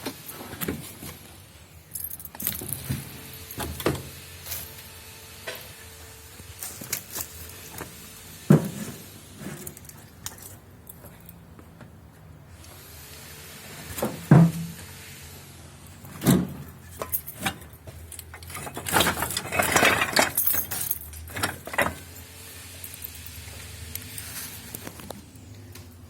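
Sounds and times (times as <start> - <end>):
metal objects clinking: 1.9 - 2.8, 16.9 - 22.2.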